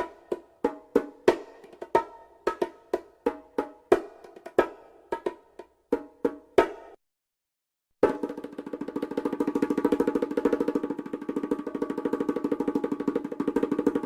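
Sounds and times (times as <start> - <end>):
drum or wood block hits: 8.0 - 14.0.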